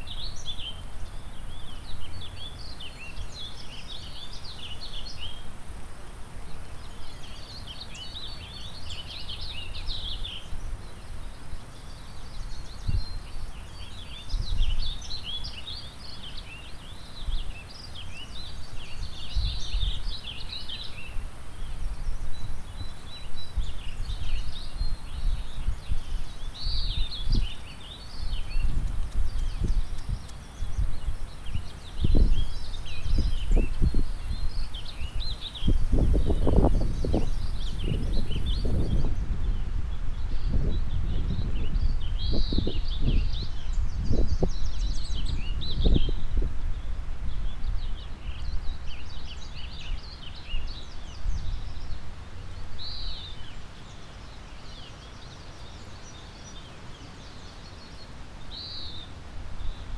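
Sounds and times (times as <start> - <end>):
songbirds twittering: 0.0 - 59.9
wind gusting on microphone: 14.2 - 15.1, 19.1 - 53.6.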